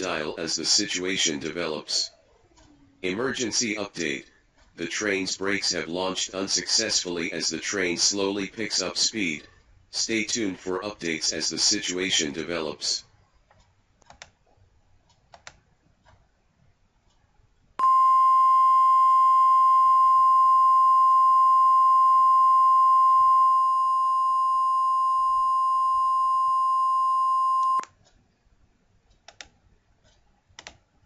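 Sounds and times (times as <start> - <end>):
faint clicks: 29.0 - 30.9.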